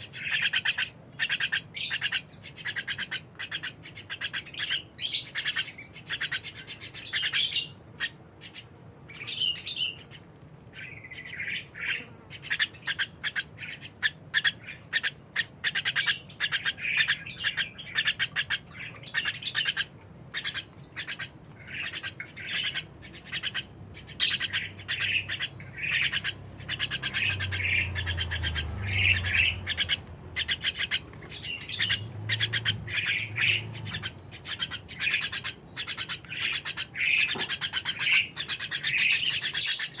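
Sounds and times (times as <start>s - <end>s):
songbird chirping and singing: 0.0s - 40.0s.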